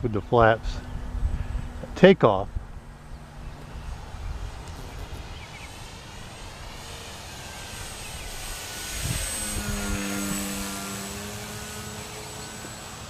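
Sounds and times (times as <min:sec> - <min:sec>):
wind on microphone: 0:00.0 - 0:06.9, 0:07.5 - 0:12.8
model plane motor whining: 0:03.0 - 0:13.0.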